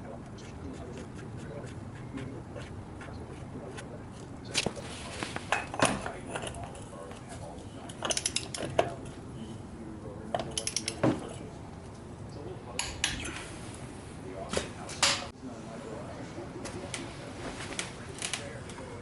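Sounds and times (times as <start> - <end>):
steady low hum: 0.0 - 19.0
metal parts and tools clinking: 7.8 - 9.0, 10.4 - 11.1.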